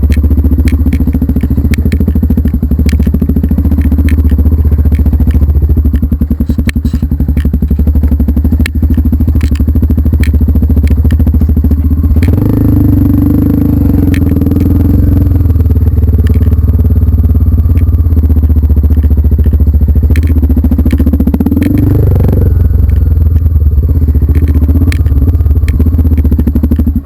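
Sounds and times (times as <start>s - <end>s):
engine running at low revs: 0.0s - 27.0s.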